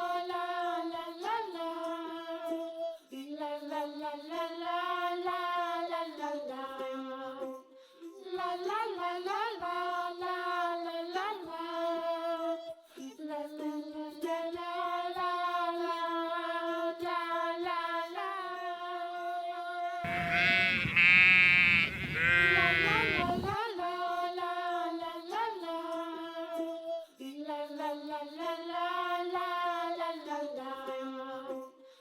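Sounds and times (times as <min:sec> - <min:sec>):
sheep bleat sound effect: 0:20.0 - 0:23.6
children's song with held notes: 0:20.0 - 0:27.1.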